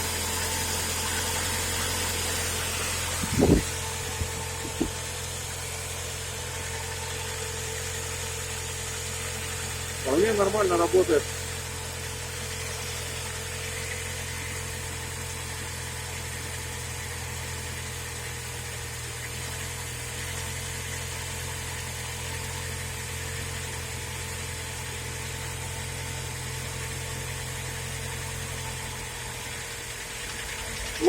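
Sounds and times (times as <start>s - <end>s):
petrol engine idling: 0.0s - 15.9s.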